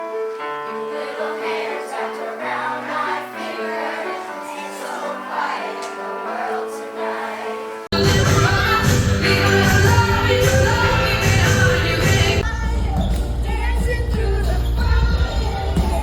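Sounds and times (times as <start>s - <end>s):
choir singing harmonies: 0.0s - 13.7s
music with heavy bass: 7.9s - 15.6s.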